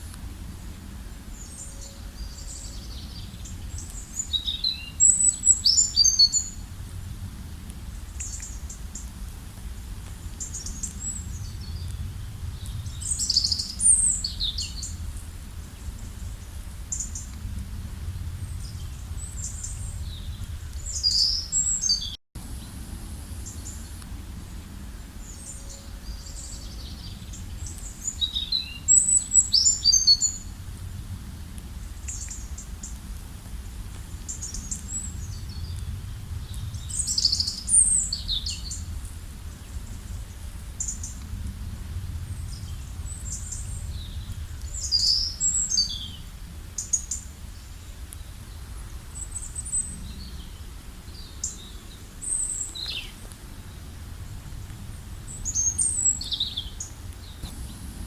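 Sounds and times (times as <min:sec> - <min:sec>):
songbirds chirping and trilling: 0:00.7 - 0:06.7, 0:10.3 - 0:17.4, 0:18.1 - 0:30.5, 0:42.2 - 0:58.0
steady low rumble: 0:06.4 - 0:21.8, 0:22.4 - 0:58.0.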